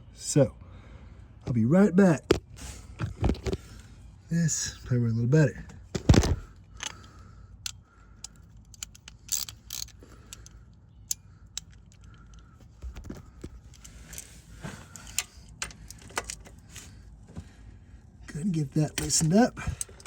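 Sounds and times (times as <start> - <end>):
wrench clicking and scraping metal: 6.8 - 12.5, 13.7 - 16.9, 18.8 - 20.0.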